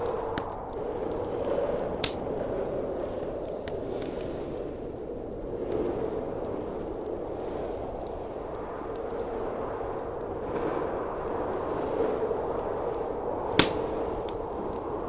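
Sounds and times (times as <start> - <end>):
fireplace crackling: 0.0 - 15.0
wind howling: 0.0 - 15.0
loud pop of fire: 13.5 - 14.0.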